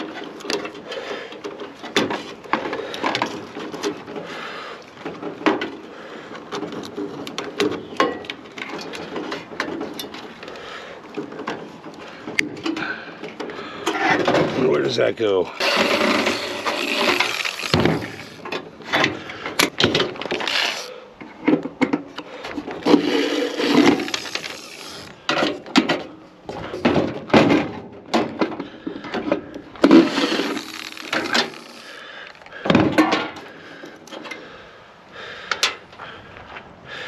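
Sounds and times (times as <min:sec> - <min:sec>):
knocks clanks and cracks of parts: 0:06.4 - 0:10.5, 0:15.6 - 0:34.4
rough scraping: 0:14.7 - 0:18.5, 0:20.2 - 0:21.0, 0:22.8 - 0:25.2, 0:29.8 - 0:32.1.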